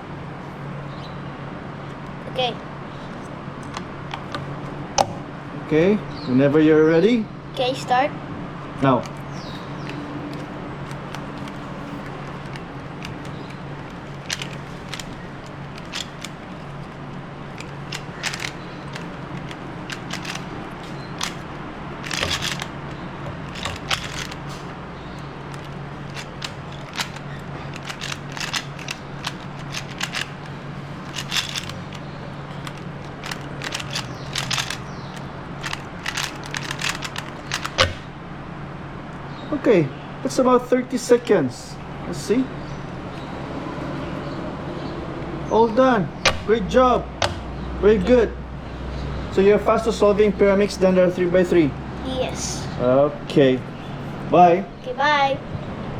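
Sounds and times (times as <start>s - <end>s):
steady low hum: 7.2s - 52.0s
plastic puzzle pieces clicking: 8.8s - 38.0s.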